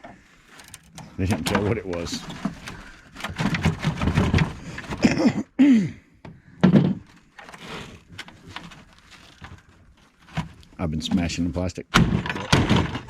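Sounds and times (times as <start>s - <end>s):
plastic housing being smashed: 0.6s - 5.4s, 11.9s - 13.0s.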